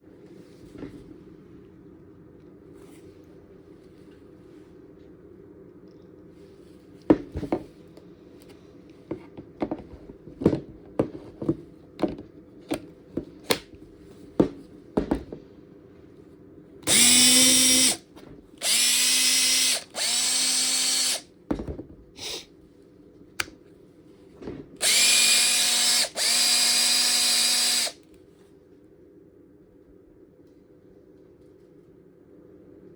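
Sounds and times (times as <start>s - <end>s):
cordless drill whining: 16.8s - 18.0s, 18.6s - 21.2s, 24.8s - 28.0s.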